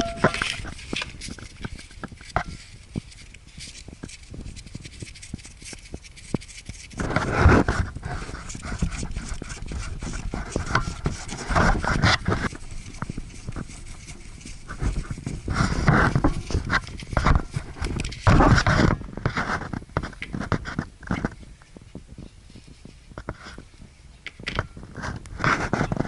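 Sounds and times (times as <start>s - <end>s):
hand tools clicking and knocking: 0.0s - 1.8s
tool scraping: 0.0s - 21.4s.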